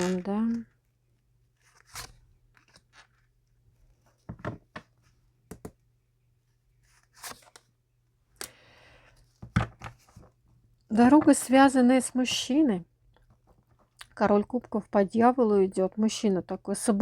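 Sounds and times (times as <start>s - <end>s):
cards rustling and slapping: 0.0s - 0.6s.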